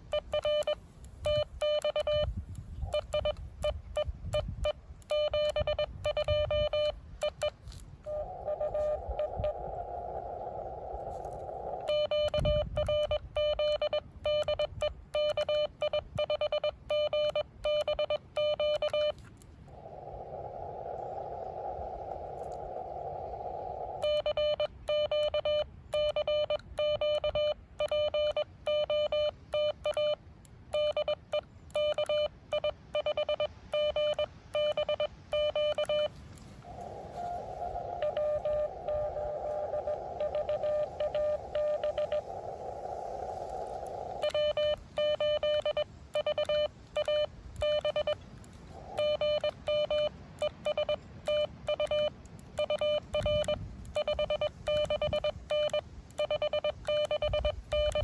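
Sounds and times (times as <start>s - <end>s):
morse code beeps: 0.0s - 9.6s, 11.8s - 19.3s, 24.0s - 42.5s, 43.4s - 48.2s, 48.9s - 58.0s
faint morse signal: 0.0s - 58.0s
radio receiver hiss: 4.4s - 13.2s, 35.3s - 50.7s.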